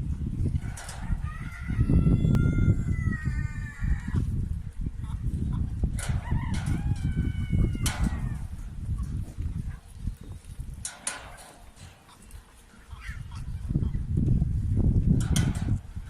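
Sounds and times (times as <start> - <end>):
steady low rumbling noise: 0.0 - 12.2, 12.8 - 16.0
rooster crowing: 1.0 - 4.2, 6.1 - 8.5.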